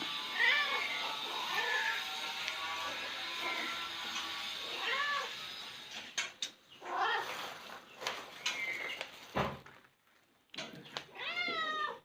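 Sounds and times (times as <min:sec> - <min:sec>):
cat meowing: 0:00.2 - 0:02.1, 0:04.7 - 0:05.4, 0:11.1 - 0:12.0.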